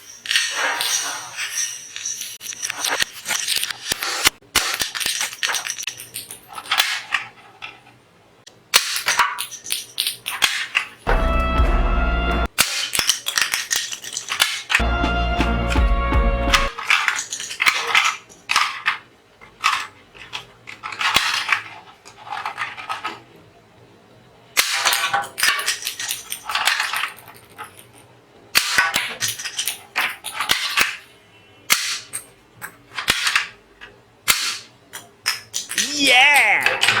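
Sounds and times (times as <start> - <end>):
toy gun firing: 34.3 - 34.7.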